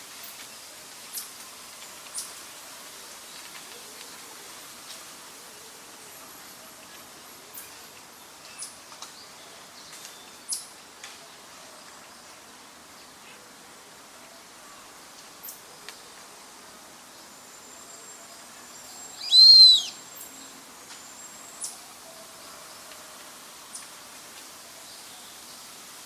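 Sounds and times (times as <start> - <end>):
steady background hiss: 0.0 - 26.0
faint high chirps: 17.6 - 20.6
loud high whistled bird call: 19.1 - 20.0.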